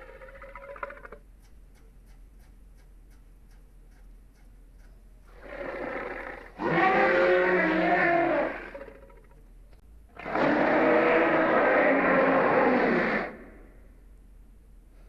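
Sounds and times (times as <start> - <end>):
faint clicks: 0.0 - 6.6
loud drawn-out roar: 5.4 - 8.8, 10.2 - 13.7
creature growl: 10.2 - 13.5.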